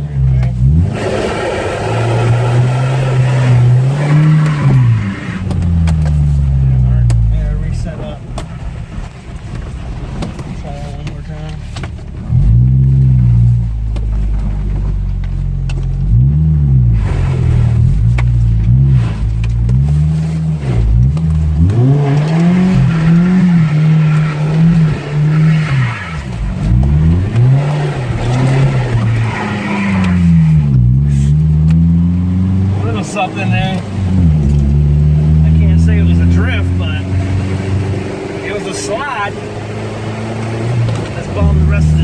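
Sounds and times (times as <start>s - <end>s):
pickup engine revving hard: 0.6s - 5.7s, 19.9s - 42.0s.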